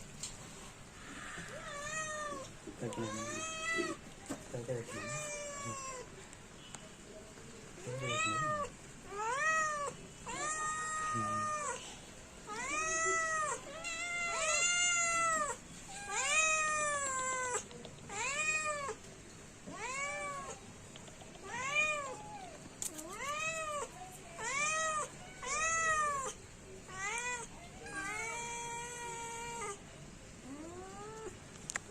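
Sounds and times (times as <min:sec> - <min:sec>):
kitten meowing: 0:01.5 - 0:04.0, 0:07.9 - 0:11.8, 0:21.4 - 0:29.8.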